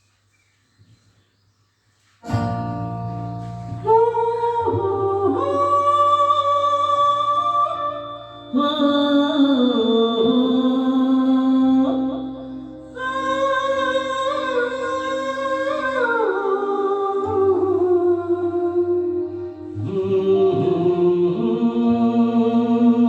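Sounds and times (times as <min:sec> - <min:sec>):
plucked-string accompaniment: 0:02.3 - 0:11.2
person singing long held notes: 0:03.8 - 0:23.0.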